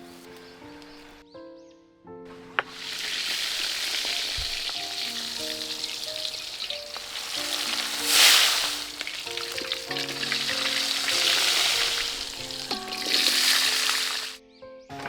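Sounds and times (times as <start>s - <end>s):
background music: 0.0s - 15.0s
food sizzling in hot oil: 2.7s - 14.4s.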